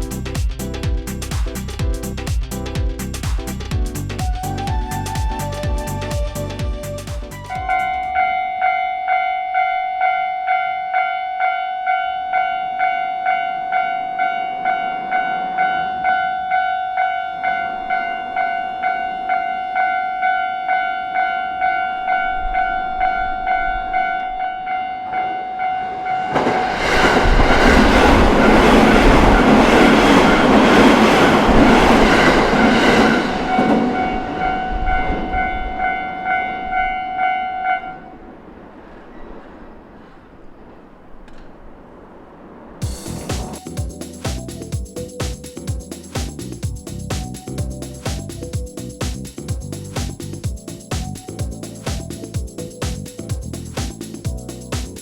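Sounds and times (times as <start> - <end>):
level-crossing warning bell: 8.0 - 38.2
train wheels clattering on rails: 26.2 - 35.8, 42.8 - 55.0.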